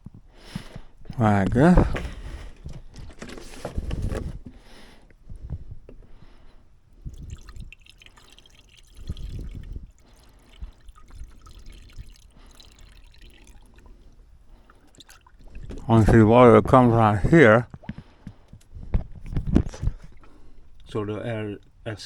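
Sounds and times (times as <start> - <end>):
water pouring and splashing: 6.9 - 16.2, 19.1 - 21.8.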